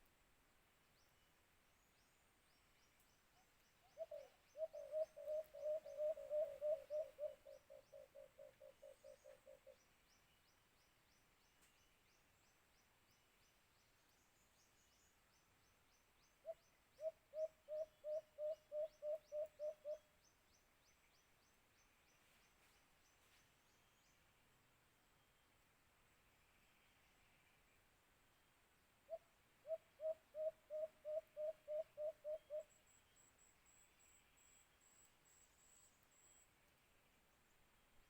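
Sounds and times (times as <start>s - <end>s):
dove cooing: 3.9s - 9.8s, 17.0s - 20.0s, 29.1s - 32.7s.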